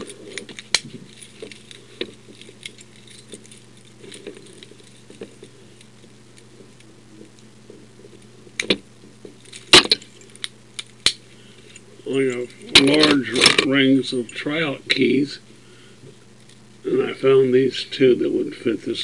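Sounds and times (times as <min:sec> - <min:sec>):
keys jingling on key ring: 0:00.0 - 0:05.9.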